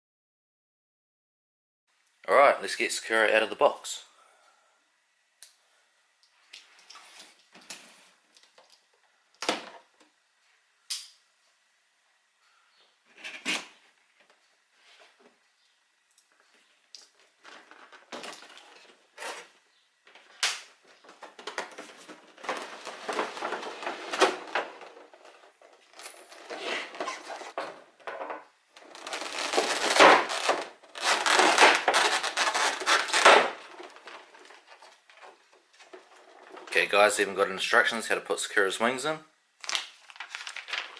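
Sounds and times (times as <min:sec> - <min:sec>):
packaging rustling and scraping: 0:17.4 - 0:19.6, 0:20.2 - 0:27.8, 0:28.8 - 0:37.0.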